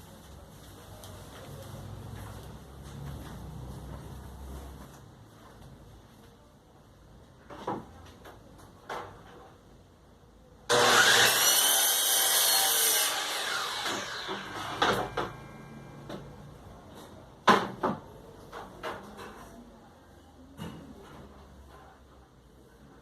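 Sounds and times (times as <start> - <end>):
power tool whining on wood: 10.7 - 15.6.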